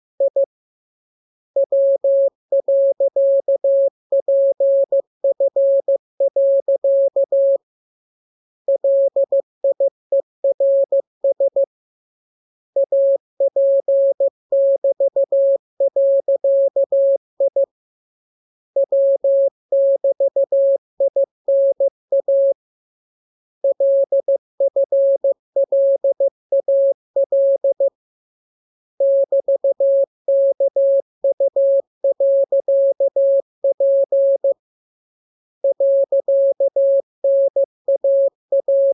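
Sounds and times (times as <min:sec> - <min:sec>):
morse code beeps: 0:01.6 - 0:07.6, 0:08.7 - 0:11.7, 0:12.8 - 0:17.7, 0:18.8 - 0:22.6, 0:23.6 - 0:27.9, 0:29.0 - 0:34.6, 0:35.6 - 0:38.9.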